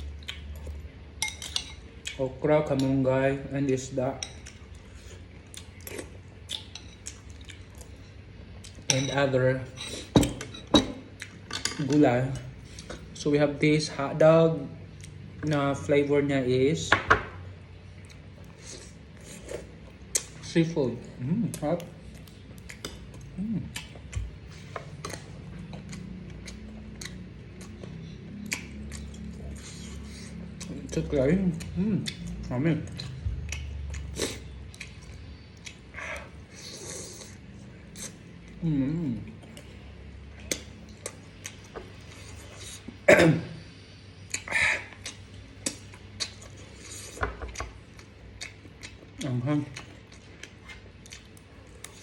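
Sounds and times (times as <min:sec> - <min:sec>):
chewing clicks and smacks: 0:00.0 - 0:00.8, 0:21.5 - 0:36.3, 0:44.3 - 0:52.0
low steady hum: 0:00.0 - 0:52.0
person coughing: 0:43.0 - 0:43.6.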